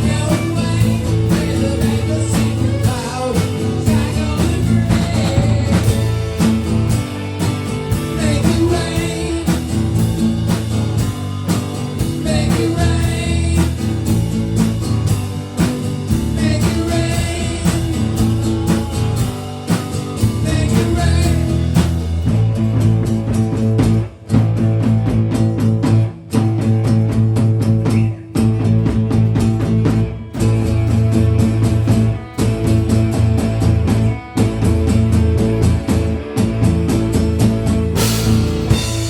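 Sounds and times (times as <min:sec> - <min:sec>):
person singing: 0:00.0 - 0:06.5, 0:07.8 - 0:10.1, 0:12.0 - 0:14.2, 0:16.1 - 0:22.1
rock guitar: 0:00.0 - 0:39.0
steady drum beat: 0:00.0 - 0:39.0.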